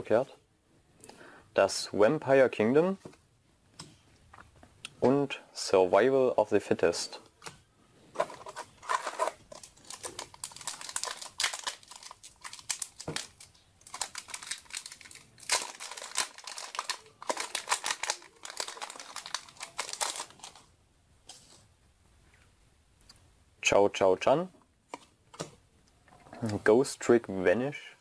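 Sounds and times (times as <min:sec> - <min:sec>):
foil wrapper crinkling: 0:08.2 - 0:20.7.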